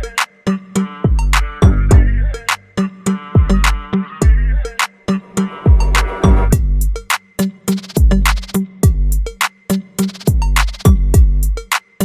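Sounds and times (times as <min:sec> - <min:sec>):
deep sliding bass kicks: 0:01.1 - 0:02.3, 0:05.6 - 0:07.0
snare and hi-hat hits: 0:05.6 - 0:12.0.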